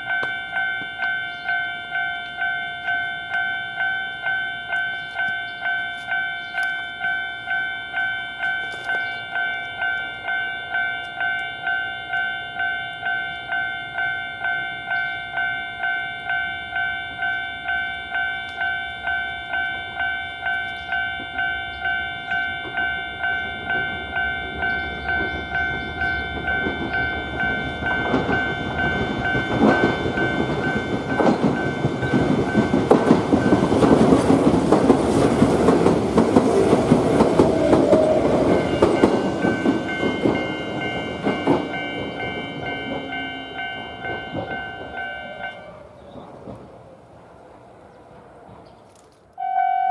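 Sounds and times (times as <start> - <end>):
level crossing bell ringing: 0.0 - 34.2, 36.8 - 45.9
train wheels clattering over rails: 20.5 - 47.4.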